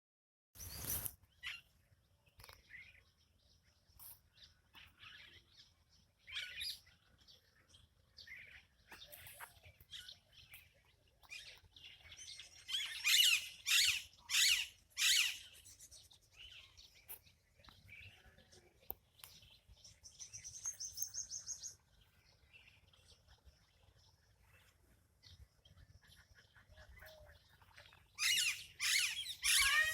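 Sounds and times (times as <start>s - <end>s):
birds chirping and calling: 4.0s - 29.9s
fast high bird trill: 28.2s - 29.9s.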